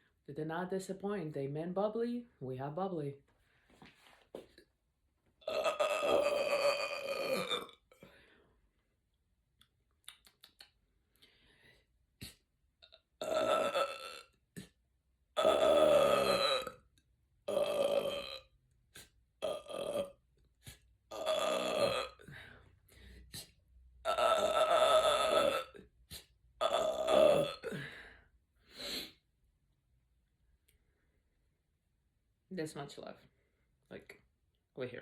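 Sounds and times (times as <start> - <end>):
woman burping: 5.4 - 7.9, 13.2 - 14.4, 15.4 - 16.8, 17.5 - 18.5, 19.4 - 20.2, 21.1 - 22.4, 24.1 - 25.8, 26.6 - 28.0.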